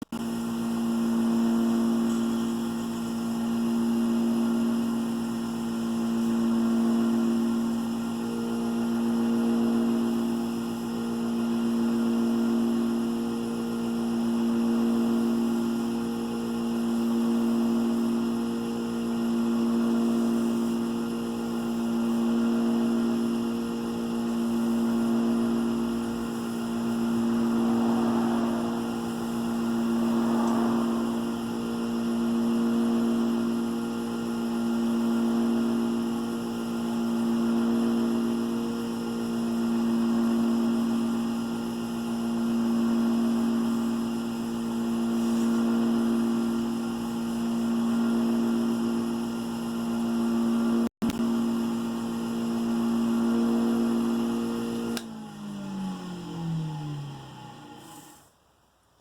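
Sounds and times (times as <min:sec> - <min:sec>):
wood lathe motor humming: 0:18.9 - 0:50.8
soft rubbing on spinning wood: 0:44.9 - 0:46.4.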